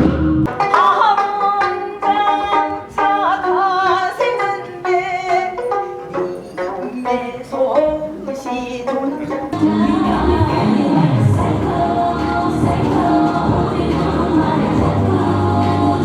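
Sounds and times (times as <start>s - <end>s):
melody of wavering pitched notes: 9.3s - 16.0s
low rising and falling sweep: 9.6s - 16.0s.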